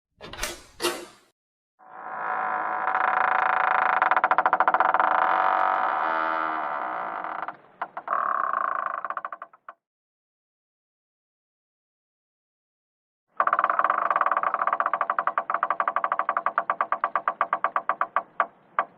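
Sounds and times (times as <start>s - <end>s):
wooden door creaking: 0.2s - 1.2s, 1.8s - 9.8s, 13.4s - 18.9s.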